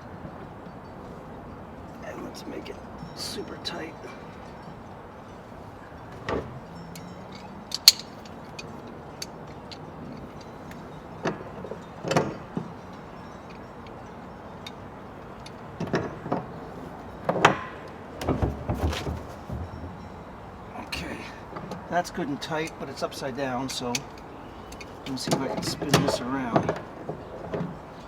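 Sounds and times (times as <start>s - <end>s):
tool knocking against drum: 17.5s - 20.0s.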